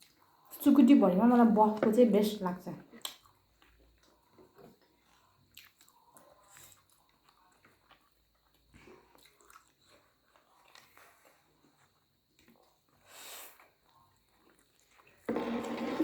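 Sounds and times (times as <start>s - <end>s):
small clicks of eating: 2.8s - 15.3s
people chewing: 2.9s - 15.8s.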